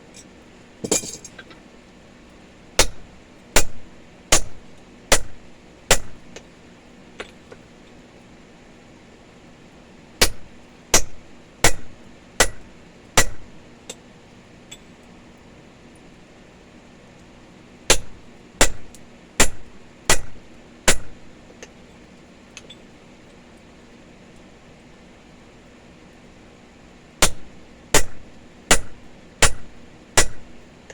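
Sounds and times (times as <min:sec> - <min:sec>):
hammer striking punch: 0:02.8 - 0:06.2, 0:10.2 - 0:13.5, 0:17.9 - 0:21.2, 0:27.2 - 0:30.5.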